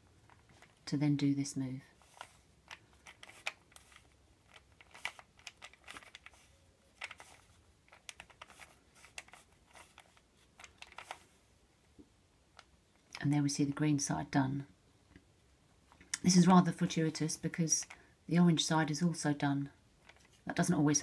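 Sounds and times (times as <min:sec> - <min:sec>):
plastic puzzle cube clicking: 0:02.1 - 0:11.2.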